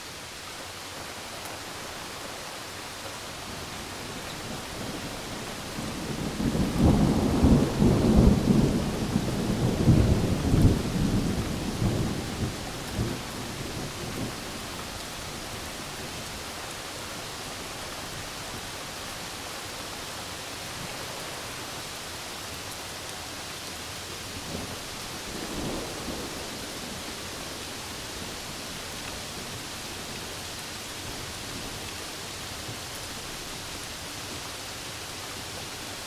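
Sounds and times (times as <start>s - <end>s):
steady rain falling: 0.0s - 36.0s
low rumble of thunder: 3.9s - 16.2s, 24.3s - 30.4s.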